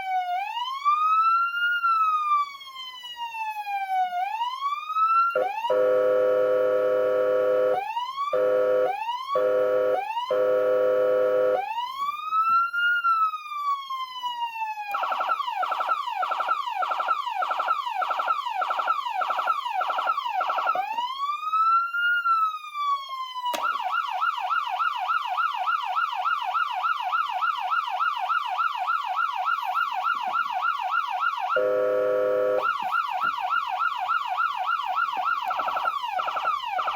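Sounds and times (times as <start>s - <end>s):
electronic siren: 5.0s - 13.3s, 14.7s - 22.5s, 23.5s - 36.9s.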